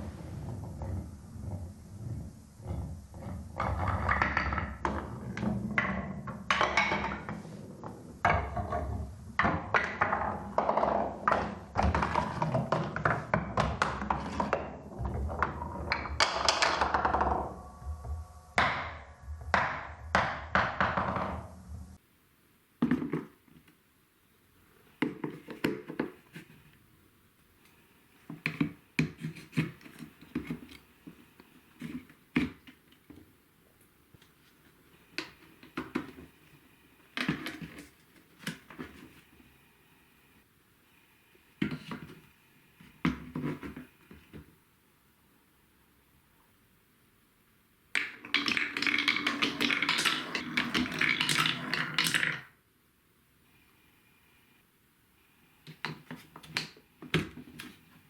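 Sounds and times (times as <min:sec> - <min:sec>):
marbles rolling on plastic track: 0:02.6 - 0:21.5, 0:48.0 - 0:52.6.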